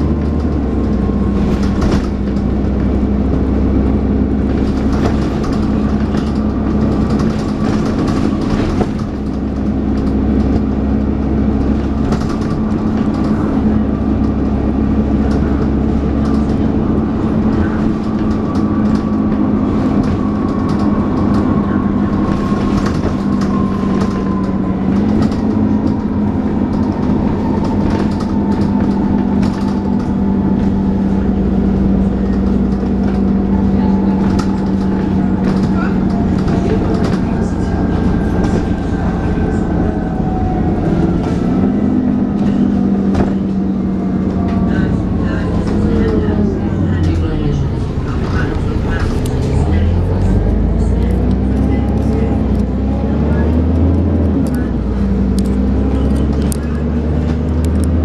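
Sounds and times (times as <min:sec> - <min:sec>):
rattles and knocks: 0:00.0 - 0:39.8
bus engine drone with whine: 0:00.0 - 0:58.0.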